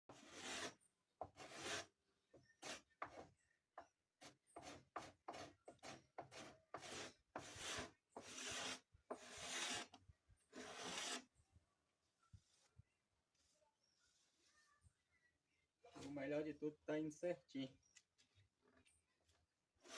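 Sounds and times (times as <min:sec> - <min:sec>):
knife blade shaving wood: 0:04.6 - 0:09.9.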